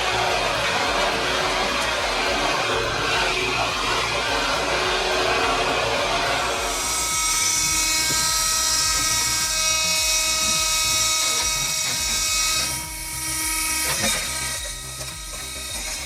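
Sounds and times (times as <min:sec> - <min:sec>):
motor whining: 0:00.0 - 0:16.0.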